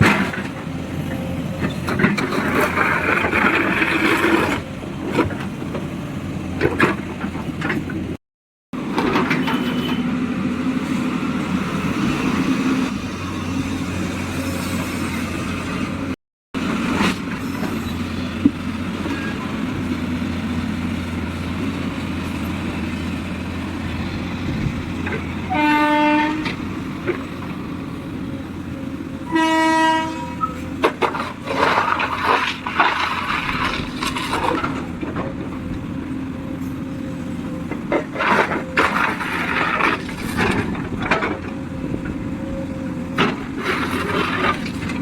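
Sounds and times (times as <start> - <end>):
diesel engine running: 10.1 - 29.3
loud horn blowing: 25.5 - 26.6, 29.2 - 30.7.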